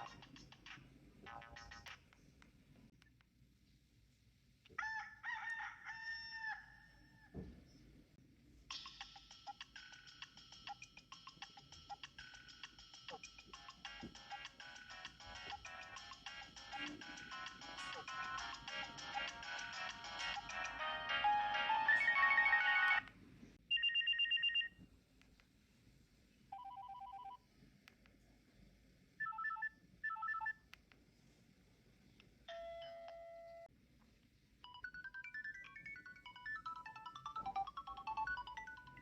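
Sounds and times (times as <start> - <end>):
polyphonic ringtone melody: 13.5 - 23.0, 34.7 - 39.0.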